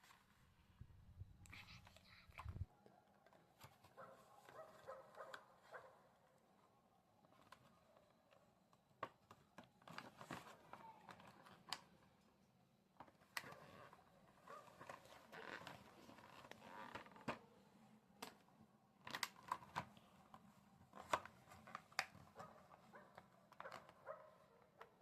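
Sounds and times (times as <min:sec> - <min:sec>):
soft rustling and scraping: 0:13.1 - 0:17.6.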